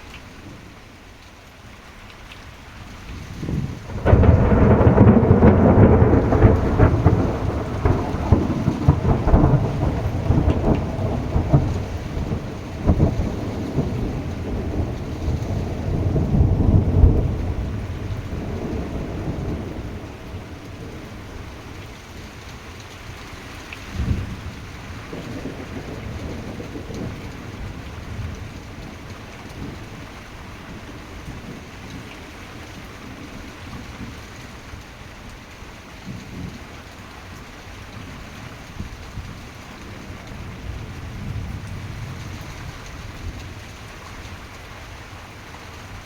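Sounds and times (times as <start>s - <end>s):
pouring rain: 0.0s - 46.0s
thunder cracking and rumbling: 3.1s - 21.9s, 23.9s - 34.2s, 37.8s - 44.6s.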